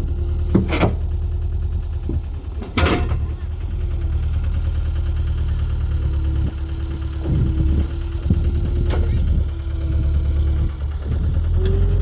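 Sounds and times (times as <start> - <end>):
engine idling: 0.0 - 12.0
clunks and knocks: 0.3 - 4.7, 6.1 - 12.0.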